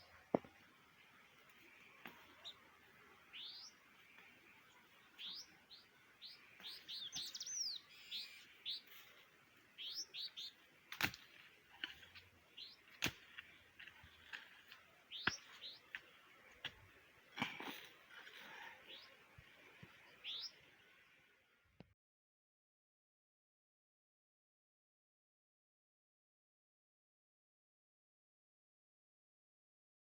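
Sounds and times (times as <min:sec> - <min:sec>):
small birds chirping: 0:01.4 - 0:20.7.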